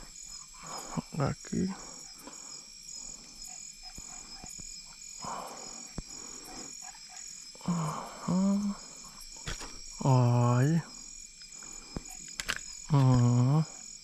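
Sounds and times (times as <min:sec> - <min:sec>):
frogs croaking: 0:00.0 - 0:14.0
pulsing insect trill: 0:00.0 - 0:14.0
small clicks: 0:11.4 - 0:13.2.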